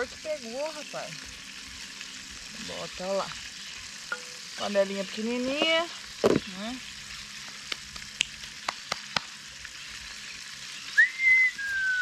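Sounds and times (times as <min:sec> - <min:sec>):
fish frying in hot oil: 0:00.0 - 0:12.0
whistled tone: 0:10.9 - 0:12.0.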